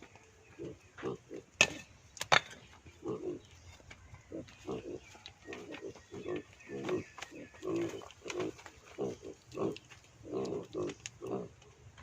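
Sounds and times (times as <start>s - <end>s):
low grunting calls: 3.0s - 3.6s, 4.2s - 11.6s.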